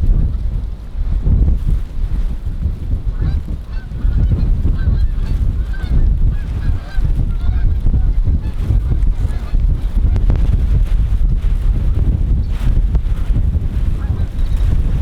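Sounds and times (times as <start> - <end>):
wind buffeting microphone: 0.0 - 15.0
geese honking: 3.1 - 10.2.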